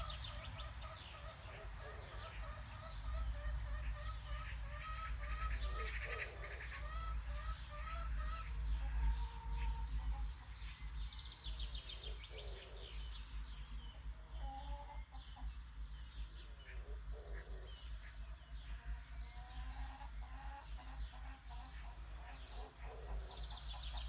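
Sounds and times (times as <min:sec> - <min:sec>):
low background rumble: 0:00.0 - 0:24.0
small birds chirping: 0:00.0 - 0:24.0.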